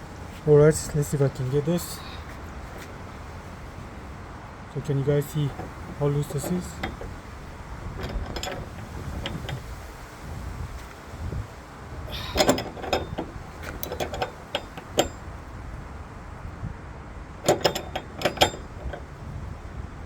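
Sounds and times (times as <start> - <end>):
socket wrench clicking: 5.5 - 7.2, 7.8 - 9.7, 12.1 - 15.3, 17.4 - 19.1.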